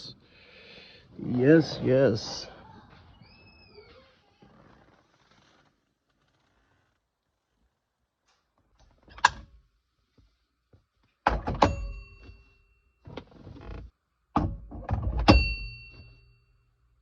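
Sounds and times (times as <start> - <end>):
scraping rustle: 4.1 - 7.0
metallic clanks ringing: 11.6 - 12.7, 15.2 - 16.6.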